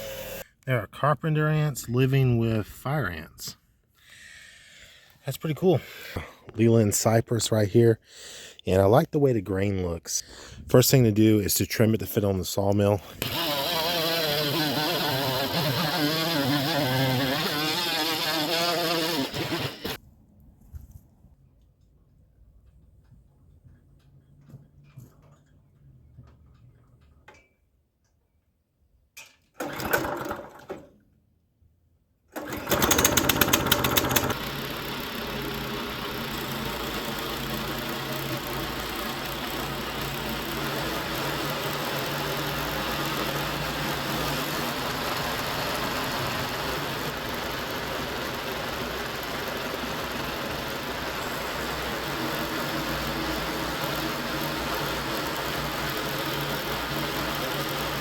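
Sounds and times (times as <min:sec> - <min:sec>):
small gas engine running: 0:00.0 - 0:00.4, 0:13.0 - 0:20.0, 0:32.4 - 0:58.0.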